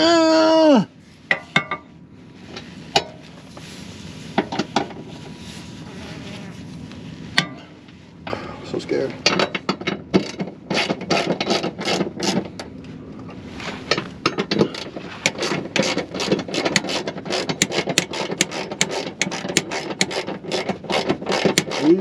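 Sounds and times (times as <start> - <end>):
ratchet wrench clicking: 15.3 - 22.0.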